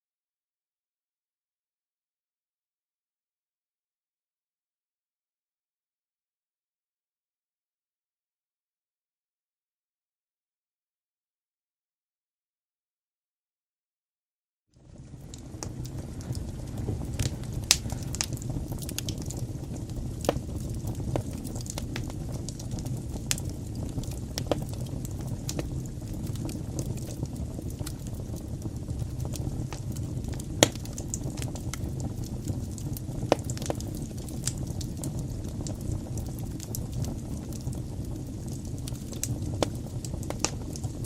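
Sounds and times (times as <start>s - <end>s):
fire crackling and popping: 14.7s - 41.0s
fire rumbling: 14.7s - 41.0s.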